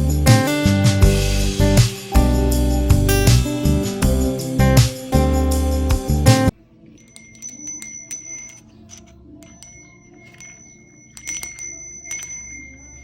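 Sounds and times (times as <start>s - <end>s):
small metal bells ringing: 6.9s - 13.0s.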